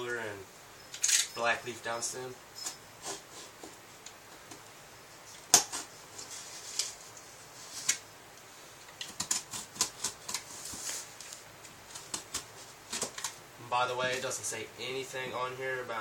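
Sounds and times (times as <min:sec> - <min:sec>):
small clicks and scrapes: 0:08.8 - 0:13.4.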